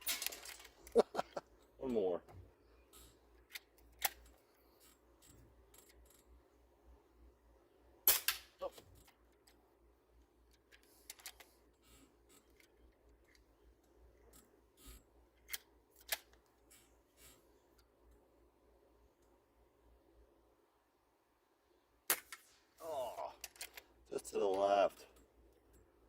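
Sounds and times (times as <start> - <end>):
gun mechanism clacks and clicks: 0.0 - 1.0, 3.4 - 6.4, 8.1 - 16.8, 23.4 - 25.9.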